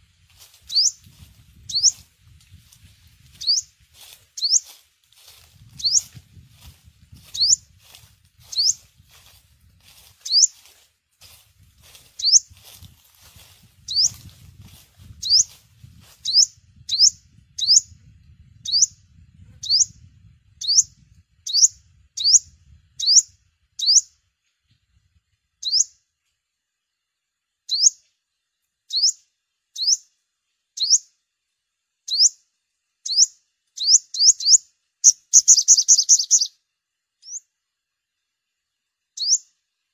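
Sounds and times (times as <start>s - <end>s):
faint low rumble: 0.0s - 25.6s
bird chirping: 0.5s - 2.1s, 3.2s - 12.8s, 13.4s - 18.0s, 18.6s - 19.0s, 19.6s - 24.2s, 25.6s - 26.0s, 27.7s - 28.1s, 28.9s - 30.2s, 30.8s - 31.2s, 32.0s - 36.6s, 37.2s - 37.5s, 39.2s - 39.6s.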